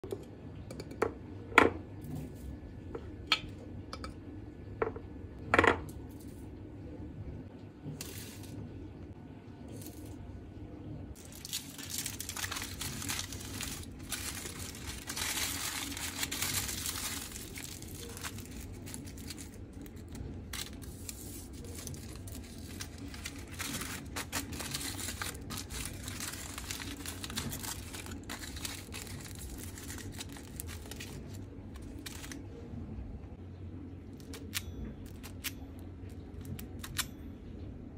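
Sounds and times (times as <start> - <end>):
steady low hum: 0.0 - 37.9
material crinkling and rustling: 11.2 - 32.4.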